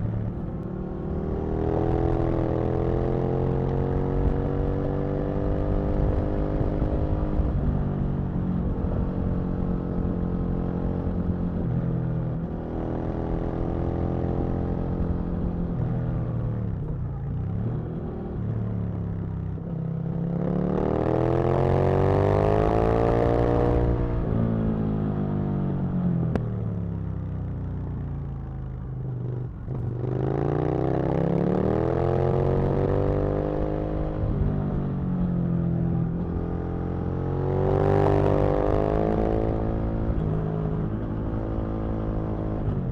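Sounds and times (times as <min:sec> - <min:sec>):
motorcycle engine revving: 0:28.7 - 0:42.9.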